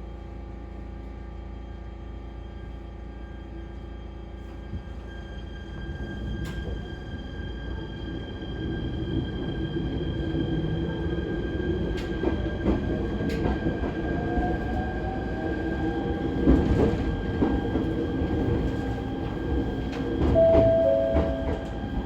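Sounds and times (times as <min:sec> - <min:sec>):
train rumble: 0:10.8 - 0:22.0
electric train inverter whine: 0:14.2 - 0:22.0
faint rising tone: 0:20.4 - 0:22.0.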